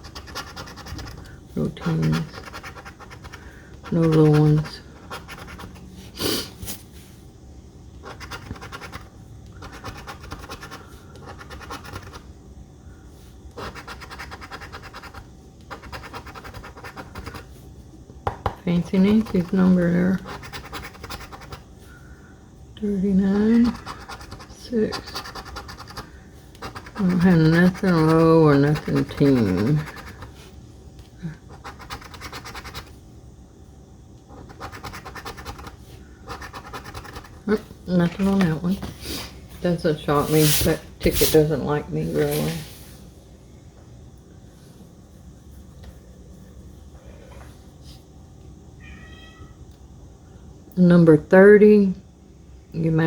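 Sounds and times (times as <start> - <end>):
scratching lottery ticket: 0.0 - 5.9, 8.0 - 12.3, 13.6 - 17.6, 18.8 - 21.7, 23.2 - 30.4, 31.5 - 32.9, 34.3 - 38.7.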